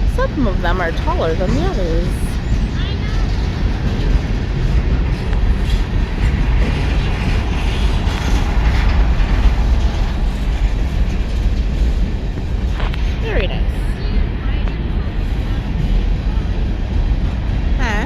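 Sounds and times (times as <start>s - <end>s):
faint rail clacks: 0.0s - 13.5s
train wheels rumbling on rails: 0.0s - 18.0s.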